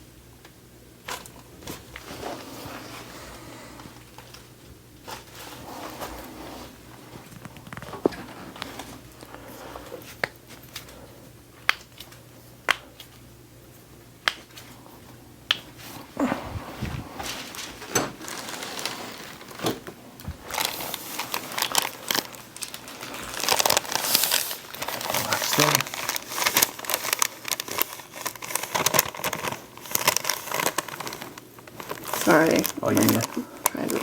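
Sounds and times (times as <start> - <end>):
rustling and crinkling: 1.1 - 34.0.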